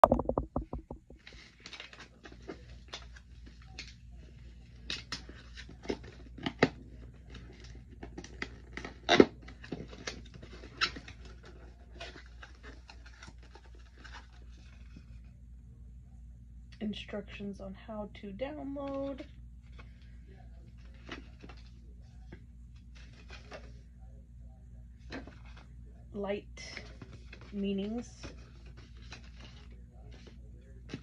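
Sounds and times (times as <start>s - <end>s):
packaging rustling and scraping: 1.1s - 15.3s, 18.8s - 23.8s, 25.0s - 25.8s, 26.7s - 31.0s.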